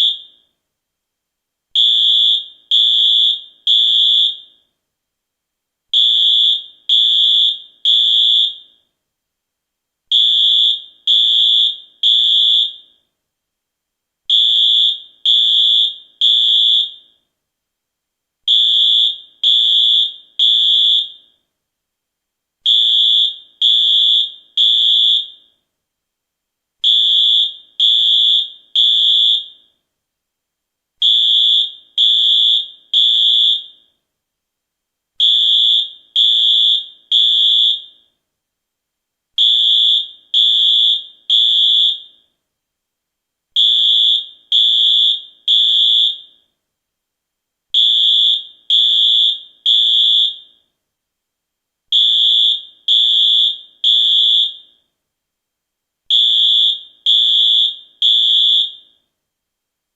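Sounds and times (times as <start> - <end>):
fire alarm beeping: 0.0 - 0.5, 1.8 - 4.7, 6.0 - 8.9, 10.1 - 13.1, 14.3 - 17.2, 18.5 - 21.4, 22.7 - 25.6, 26.8 - 29.8, 31.0 - 33.9, 35.2 - 38.2, 39.4 - 42.3, 43.6 - 46.5, 47.8 - 50.7, 52.0 - 54.8, 56.1 - 59.0.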